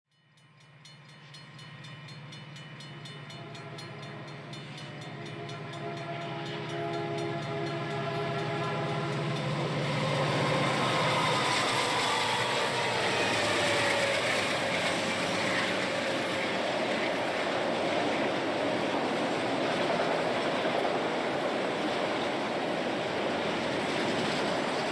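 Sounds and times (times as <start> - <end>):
passing train rumble: 0.2 - 24.9
train horn chord: 2.9 - 15.4.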